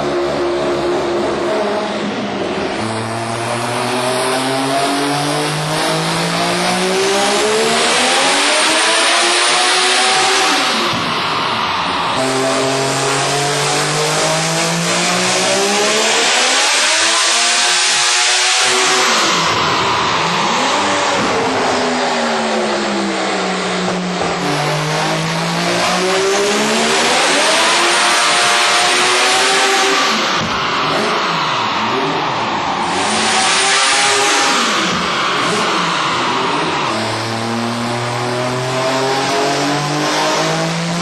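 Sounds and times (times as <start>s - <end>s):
rotary engine revving: 12.1s - 41.0s.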